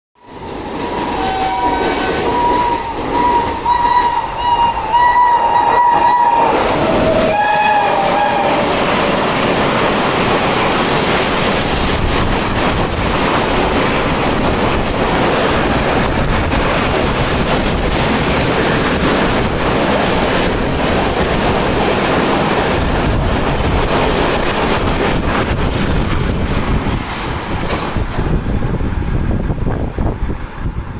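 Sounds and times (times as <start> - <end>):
train wheels clacking on rails: 0.2 - 30.9
locomotive horn blast: 0.8 - 9.3.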